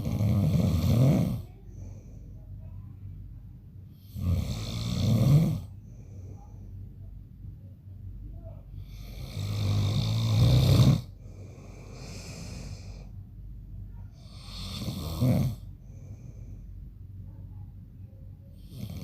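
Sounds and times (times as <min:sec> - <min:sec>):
man snoring: 0:00.0 - 0:01.5, 0:04.1 - 0:05.7, 0:08.9 - 0:13.0, 0:14.2 - 0:15.7, 0:18.7 - 0:19.0
soft hissing breath: 0:00.9 - 0:03.0, 0:05.3 - 0:07.1, 0:08.4 - 0:17.7.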